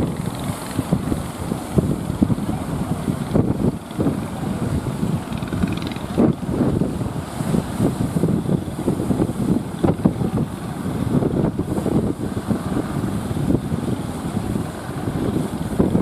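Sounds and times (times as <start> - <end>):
heavy surf rumble: 0.0 - 16.0
wind buffeting microphone: 0.0 - 16.0.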